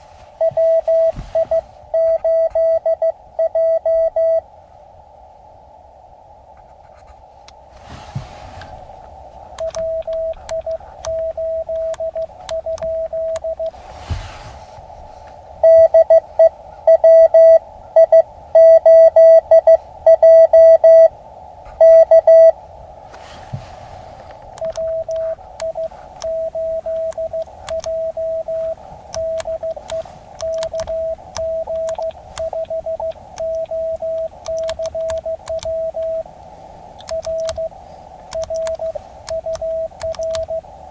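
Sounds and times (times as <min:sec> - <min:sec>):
radio filter hiss: 0:00.0 - 0:40.9
morse code tone: 0:00.4 - 0:04.4, 0:09.6 - 0:13.8, 0:15.6 - 0:21.1, 0:21.8 - 0:22.6, 0:24.6 - 0:36.3, 0:37.0 - 0:40.8
scattered clicks: 0:09.4 - 0:13.8, 0:24.4 - 0:40.6.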